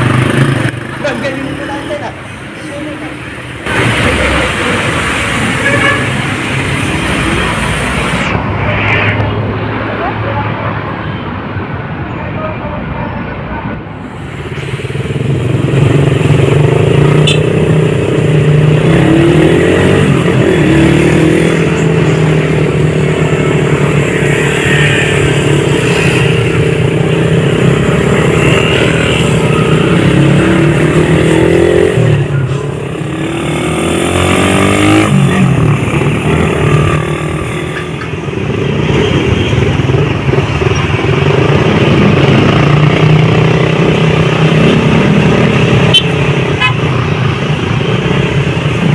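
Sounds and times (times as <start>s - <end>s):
motorcycle engine accelerating: 15.1s - 38.0s.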